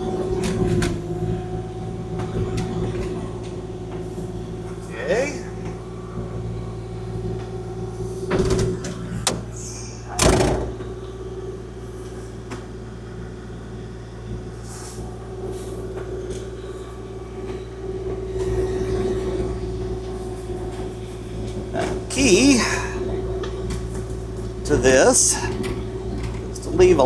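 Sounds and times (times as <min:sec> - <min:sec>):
excavator diesel engine running: 0:00.0 - 0:27.0
sharp knocks and clunks: 0:10.2 - 0:10.8.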